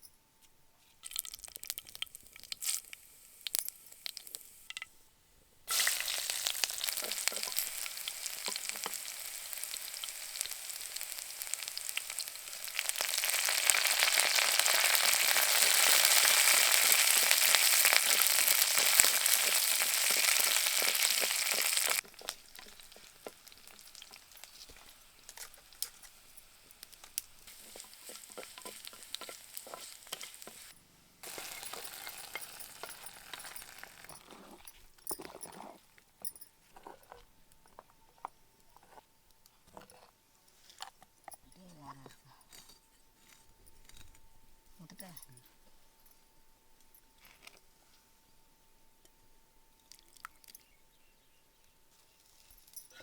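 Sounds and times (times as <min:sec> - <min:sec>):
food sizzling in oil: 0:01.2 - 0:04.7, 0:05.7 - 0:34.3
scraping stirring: 0:05.7 - 0:11.0, 0:11.6 - 0:35.7.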